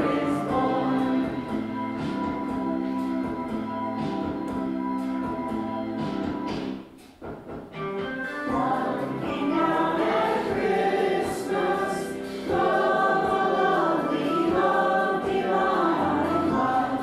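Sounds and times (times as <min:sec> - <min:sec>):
choir singing: 0:00.0 - 0:01.8, 0:08.5 - 0:17.0.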